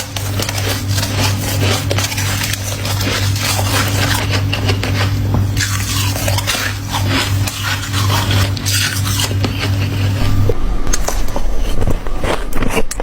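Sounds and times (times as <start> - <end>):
ice crunching in mouth: 0.0 - 10.2
steady low hum: 0.0 - 13.0.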